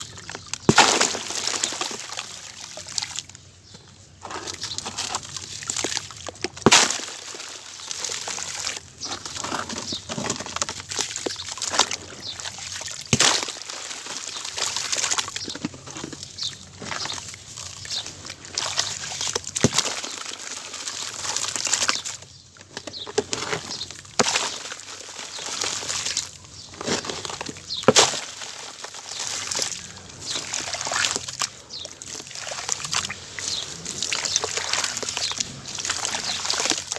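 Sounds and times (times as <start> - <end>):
wet crunching and squishing: 0.0 - 36.9
sharp cracks of pieces breaking: 0.6 - 2.0, 6.6 - 7.2, 27.9 - 28.3.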